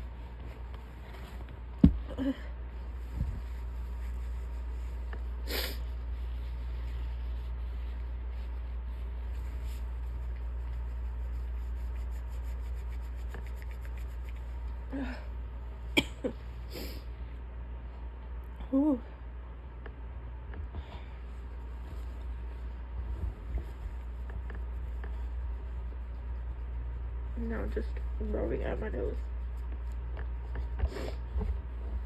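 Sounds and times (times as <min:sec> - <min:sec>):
tissue rubbing at nose: 0:02.7 - 0:14.9, 0:21.2 - 0:32.0.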